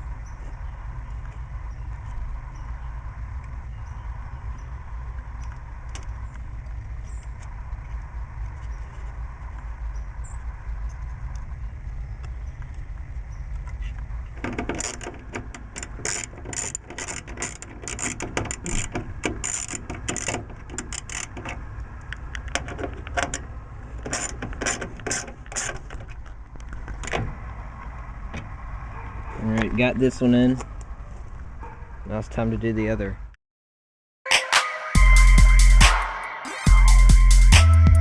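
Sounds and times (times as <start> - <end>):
hand tools and hardware clicking: 13.6 - 27.2.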